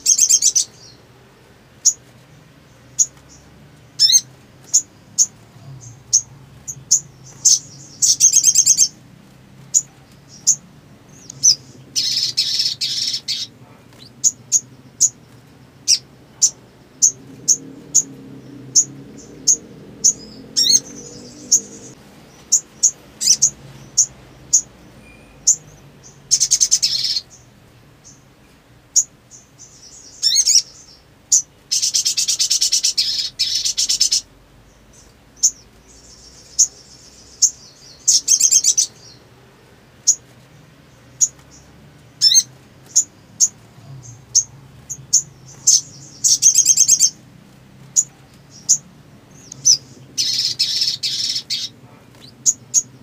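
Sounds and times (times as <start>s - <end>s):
bird chirping: 0.0s - 53.0s
buzzy bird trills: 2.8s - 9.0s, 9.6s - 28.3s, 29.0s - 34.3s, 41.2s - 47.2s, 47.9s - 52.9s.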